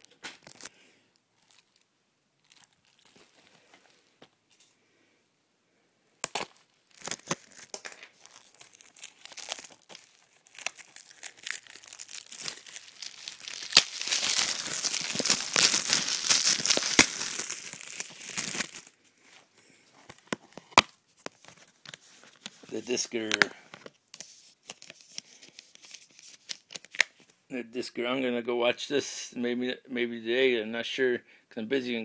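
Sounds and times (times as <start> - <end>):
plastic shrink-wrap crinkling: 0.0 - 4.3, 6.3 - 27.3.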